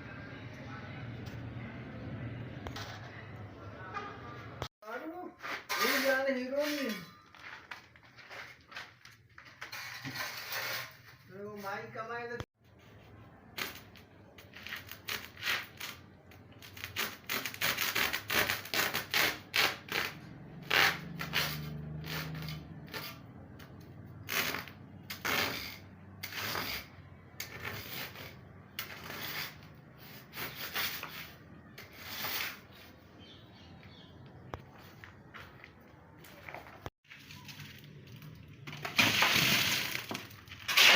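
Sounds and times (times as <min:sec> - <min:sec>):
hand tool scraping rough surface: 0:05.3 - 0:11.5, 0:17.6 - 0:23.3, 0:24.3 - 0:33.0, 0:38.8 - 0:40.9.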